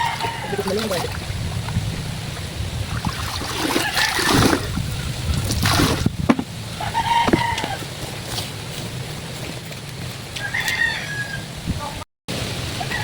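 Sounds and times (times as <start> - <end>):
rooster crowing: 0.0 - 0.8, 6.8 - 7.9, 10.4 - 11.5
water sloshing in a basin: 0.0 - 6.6
wind on microphone: 0.0 - 8.3, 11.2 - 12.0.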